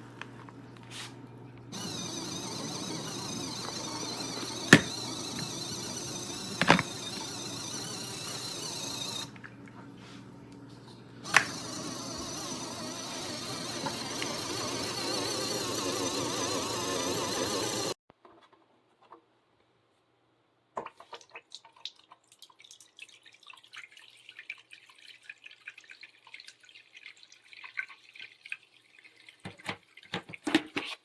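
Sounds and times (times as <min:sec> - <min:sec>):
washing machine motor humming: 0:00.0 - 0:18.0.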